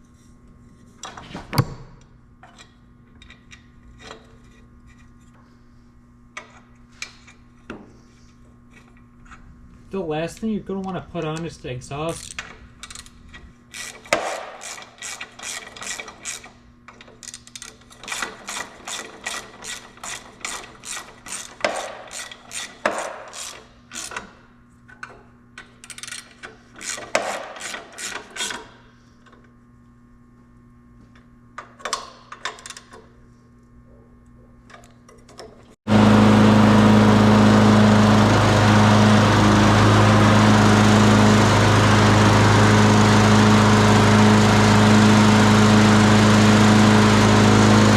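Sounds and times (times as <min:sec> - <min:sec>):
lawn mower engine running: 0:35.9 - 0:47.9.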